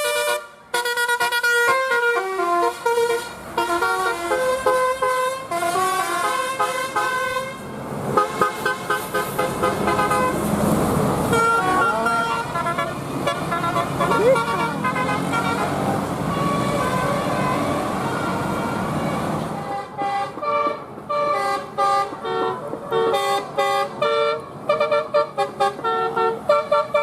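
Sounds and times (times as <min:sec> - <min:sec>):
bus horn playing a melody: 0:00.0 - 0:10.5, 0:11.2 - 0:27.0
rushing noise: 0:07.6 - 0:19.7.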